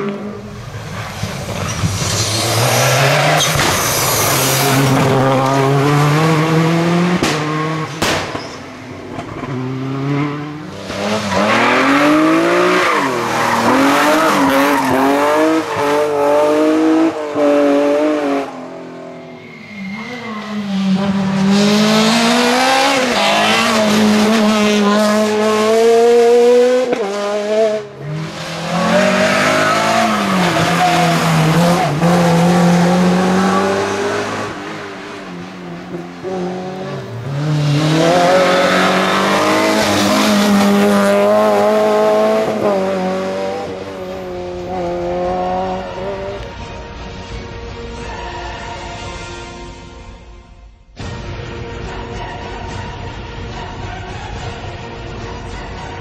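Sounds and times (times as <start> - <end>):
rally car engines revving: 0.0 - 49.0
tyre squeal: 1.6 - 4.8, 19.2 - 21.1.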